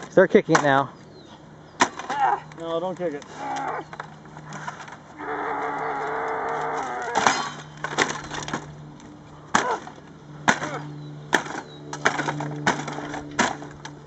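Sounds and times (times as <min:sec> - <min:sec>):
sharp hits with cracking and splintering: 0:09.5 - 0:13.7.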